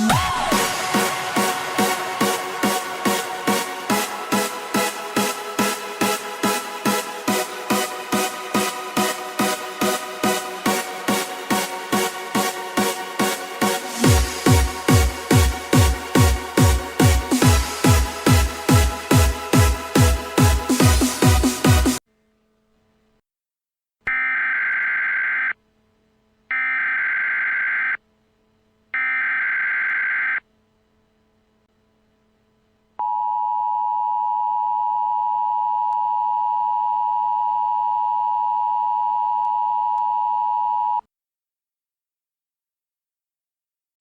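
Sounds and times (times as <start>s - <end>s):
harsh digital data screech: 24.1s - 25.6s, 26.6s - 28.0s, 29.0s - 30.4s
long steady attention tone: 33.0s - 41.1s.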